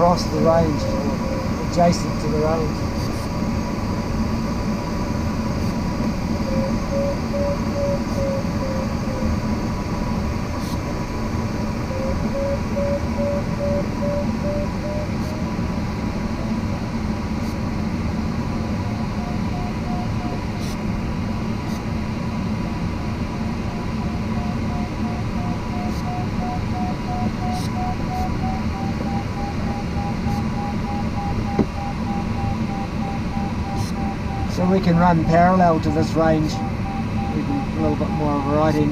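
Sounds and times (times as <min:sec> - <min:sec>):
airflow rushing in cockpit: 0:00.0 - 0:38.9
variometer beeping: 0:23.6 - 0:38.9.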